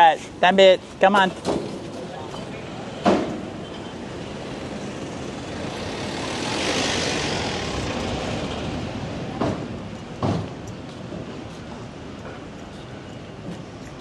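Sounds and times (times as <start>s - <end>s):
vehicle passing by: 2.7s - 10.2s
sharp knocks: 9.4s - 10.6s.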